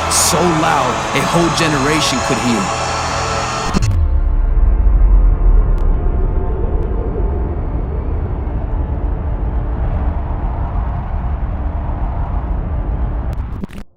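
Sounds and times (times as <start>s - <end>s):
loud deep rumble: 2.6s - 13.4s.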